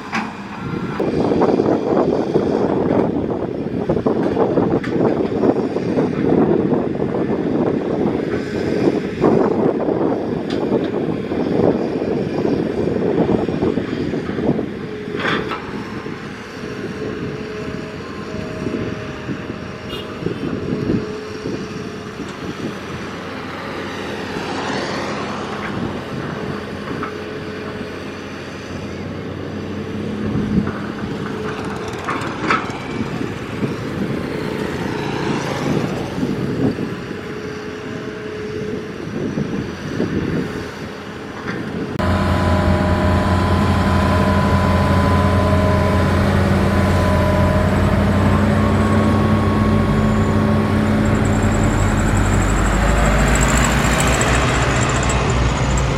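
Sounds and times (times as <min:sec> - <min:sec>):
excavator engine under load: 0:24.8 - 0:37.0, 0:41.4 - 0:55.9.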